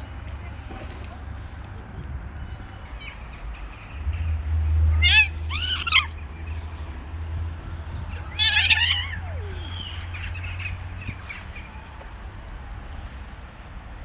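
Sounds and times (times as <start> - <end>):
harsh squawking animal cry: 2.9 - 11.8
faint animal calls: 2.9 - 13.2.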